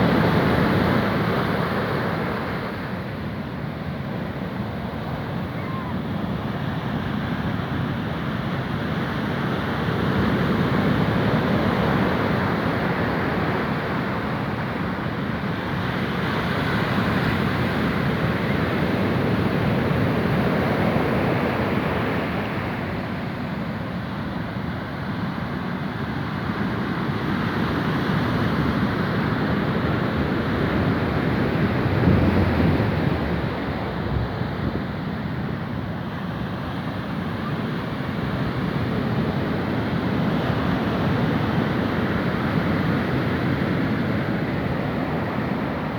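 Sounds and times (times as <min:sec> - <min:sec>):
wind on microphone: 0:28.6 - 0:36.1
sea waves washing: 0:30.4 - 0:36.8.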